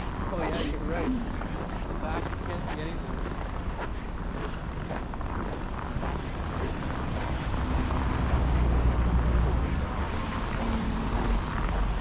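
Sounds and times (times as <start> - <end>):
street traffic rumble: 0.0 - 12.0
vehicle approaching: 5.5 - 12.0.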